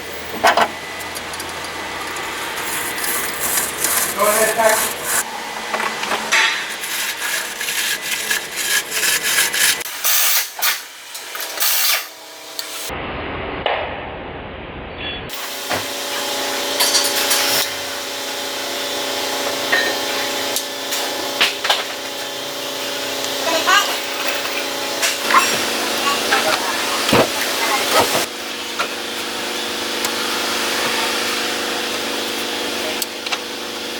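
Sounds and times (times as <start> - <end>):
hand tools scraping and clicking: 0.3 - 12.8, 24.0 - 28.9.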